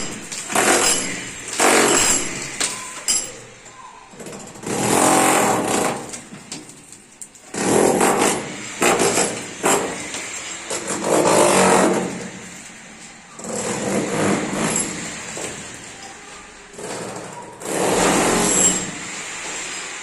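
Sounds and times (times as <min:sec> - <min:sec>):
power tool running: 0:00.0 - 0:02.8, 0:07.4 - 0:12.6, 0:16.7 - 0:20.0.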